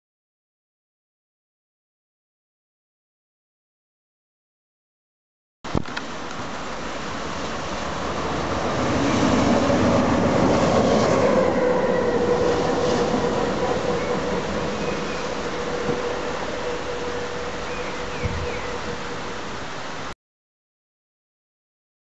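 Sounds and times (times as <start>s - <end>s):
train rumbling past on rails: 6.0s - 20.1s
steady whine: 11.2s - 20.1s.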